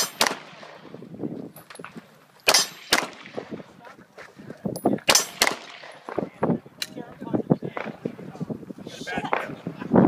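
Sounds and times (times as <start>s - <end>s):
metallic clang of steel targets: 0.0s - 0.6s, 1.6s - 3.2s, 4.8s - 6.2s
gunshots: 0.0s - 1.0s, 2.4s - 3.7s, 5.0s - 6.4s.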